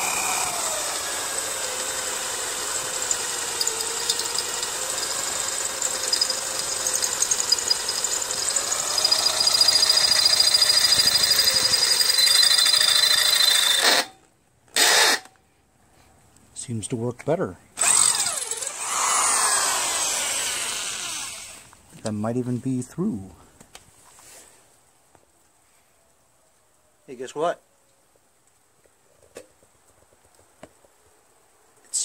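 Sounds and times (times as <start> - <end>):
cordless drill whining: 0.0 - 15.4, 17.8 - 21.8
drill bit squealing on metal: 5.8 - 14.1.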